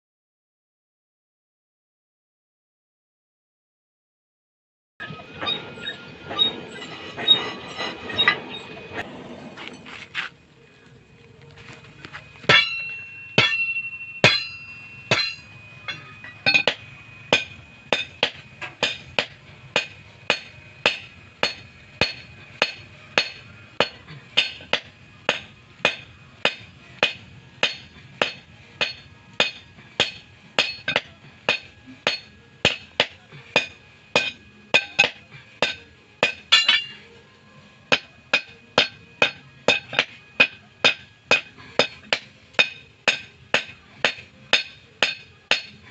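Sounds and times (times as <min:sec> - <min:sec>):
hammer striking steel on anvil: 0:12.4 - 0:37.1, 0:37.9 - 0:45.9.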